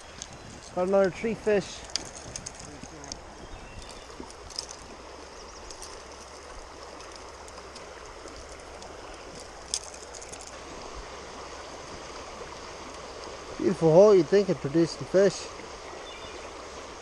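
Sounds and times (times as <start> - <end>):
creek water flowing: 0.0 - 17.0
faint high ticks: 1.8 - 3.2, 5.6 - 10.6.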